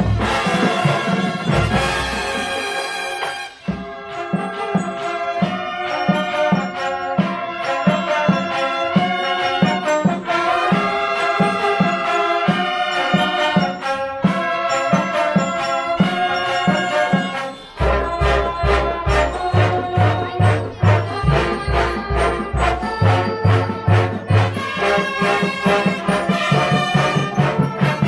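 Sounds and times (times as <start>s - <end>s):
marching drum beat: 0.0s - 3.1s, 16.0s - 28.0s
brass bugles playing melody: 0.0s - 28.0s.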